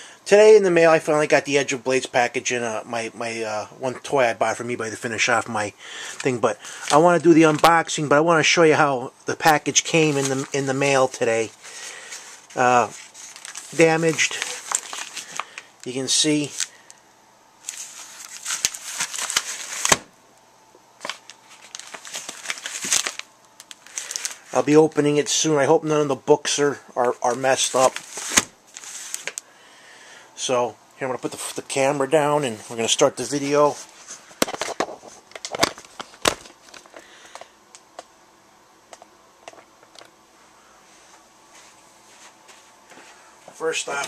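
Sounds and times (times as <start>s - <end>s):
package rustling and crinkling: 9.8s - 16.8s, 17.6s - 20.1s, 21.0s - 24.7s, 27.2s - 29.4s, 32.6s - 37.5s.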